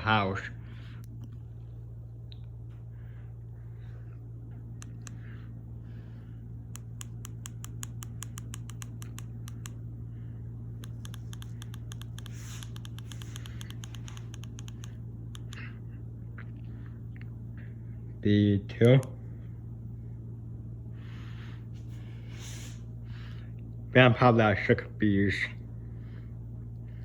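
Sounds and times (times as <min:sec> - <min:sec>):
ceiling fan humming: 0:00.0 - 0:27.0
rapid sharp clicks: 0:06.7 - 0:09.8, 0:10.8 - 0:15.7.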